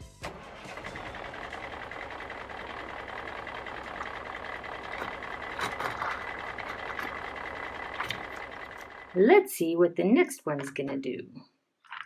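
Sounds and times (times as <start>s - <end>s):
toy truck wheels whirring: 0.3s - 9.2s.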